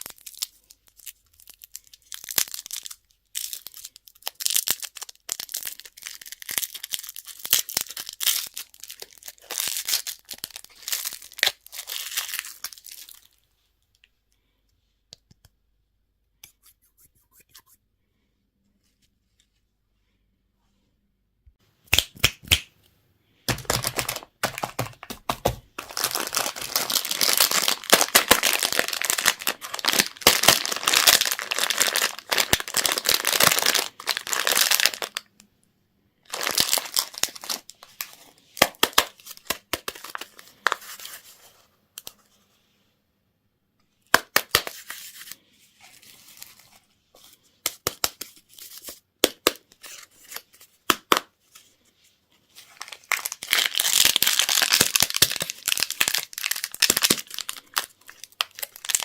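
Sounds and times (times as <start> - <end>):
sharp wrapper crackles: 0.0 - 13.4, 23.5 - 35.3, 36.3 - 40.8, 52.6 - 59.0
candy wrappers crinkling: 0.0 - 13.5, 23.5 - 35.5, 36.2 - 41.2, 52.5 - 59.0.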